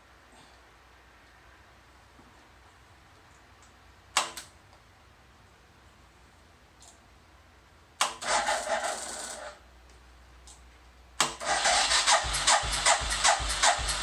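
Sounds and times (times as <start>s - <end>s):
motorcycle engine cranking: 8.1s - 9.6s, 11.2s - 14.0s.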